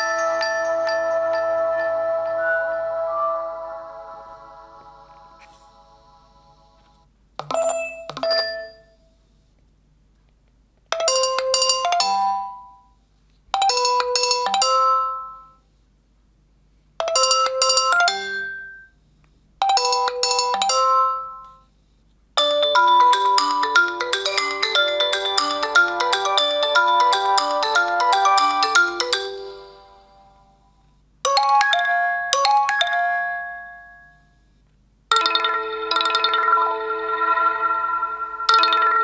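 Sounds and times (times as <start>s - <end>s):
two-note chime: 0.0s - 6.3s, 35.1s - 39.0s
busier ringtone melody: 0.0s - 9.0s, 11.0s - 12.9s, 13.6s - 15.6s, 17.0s - 18.9s, 19.6s - 21.6s, 22.4s - 30.6s, 31.3s - 34.3s, 35.1s - 39.0s.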